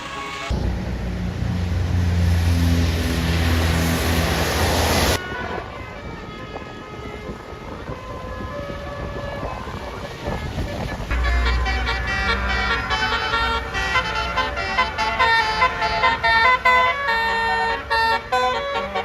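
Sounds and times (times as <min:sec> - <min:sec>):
bus engine running: 0:00.0 - 0:05.2, 0:10.2 - 0:19.0
road traffic noise: 0:00.0 - 0:19.0.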